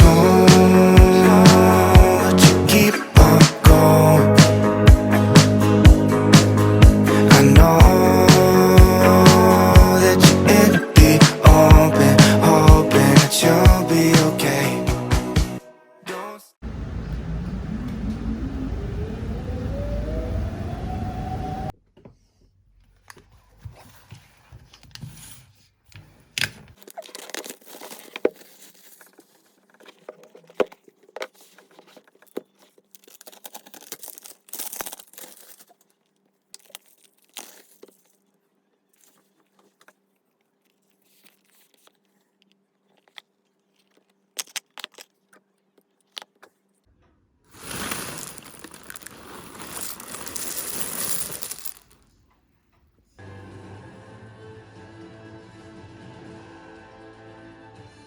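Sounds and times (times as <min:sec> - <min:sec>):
background music: 0:00.0 - 0:16.5, 0:53.2 - 0:58.0
packaging tearing and crinkling: 0:26.7 - 0:38.3, 0:38.9 - 0:46.5, 0:47.6 - 0:52.0.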